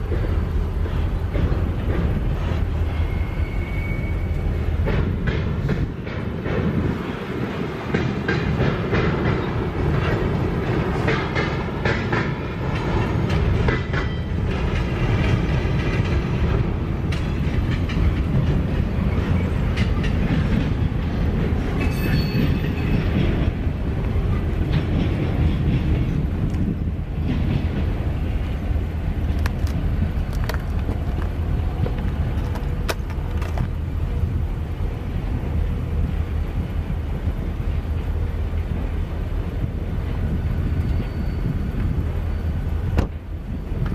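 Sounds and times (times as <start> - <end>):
railroad cars rumbling: 0.0 - 43.9
high wheel squeals: 2.6 - 4.8, 21.7 - 23.2, 40.2 - 43.9.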